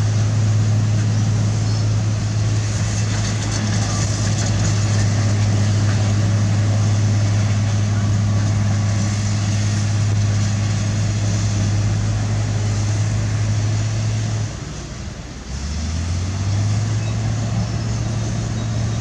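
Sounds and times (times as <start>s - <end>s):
diesel engine humming: 0.0s - 19.0s.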